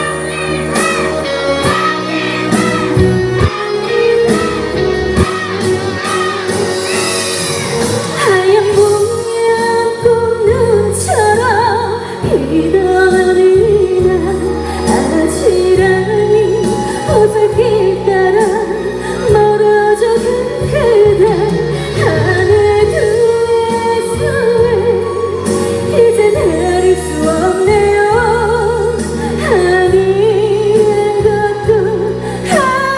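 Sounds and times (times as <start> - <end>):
vibrato melody line: 0.0 - 9.7
backing track: 0.0 - 32.9.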